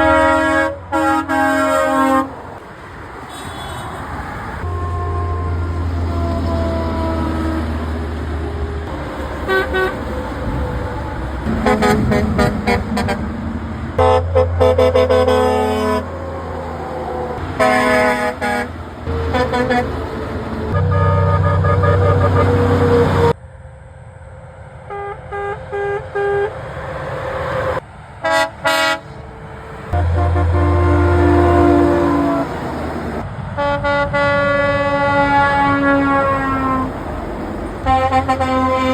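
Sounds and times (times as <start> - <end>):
truck horns honking: 0.0 - 23.4, 24.8 - 38.9
road traffic: 0.0 - 38.9
low engine rumble: 4.6 - 18.0.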